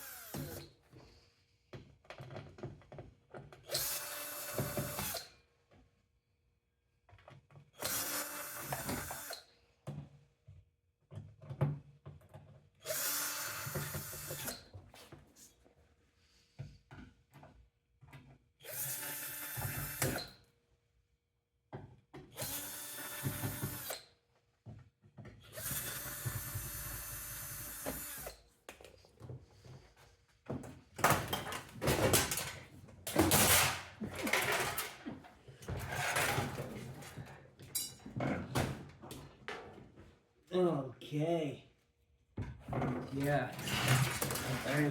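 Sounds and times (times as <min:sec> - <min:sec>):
power drill whining: 0:00.0 - 0:00.7, 0:03.6 - 0:05.3, 0:07.8 - 0:09.4, 0:12.8 - 0:14.7, 0:18.6 - 0:20.3, 0:22.3 - 0:24.1, 0:25.5 - 0:28.4
parts clattering and knocking: 0:28.7 - 0:40.2, 0:42.4 - 0:44.9.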